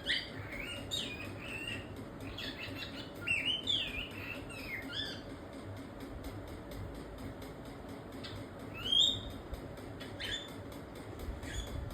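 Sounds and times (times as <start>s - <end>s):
cockatiel chirping: 0.0s - 5.3s, 8.2s - 9.3s, 10.0s - 10.6s, 11.4s - 11.8s.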